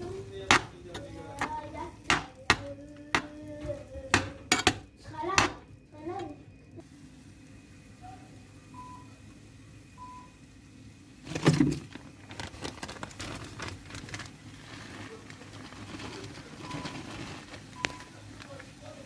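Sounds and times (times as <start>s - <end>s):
kitchen clatter and knocks: 4.1s - 5.6s.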